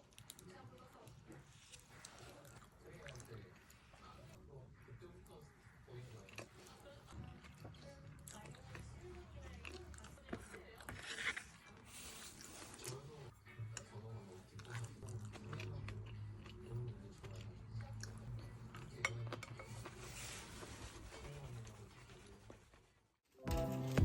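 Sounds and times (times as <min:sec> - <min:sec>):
person chewing food: 0:00.0 - 0:04.4, 0:05.7 - 0:20.2.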